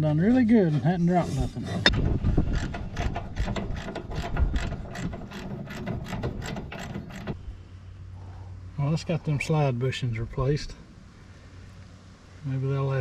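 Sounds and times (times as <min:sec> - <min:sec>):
low steady hum: 0:00.0 - 0:13.0
ratchet wrench clicking: 0:02.5 - 0:07.4.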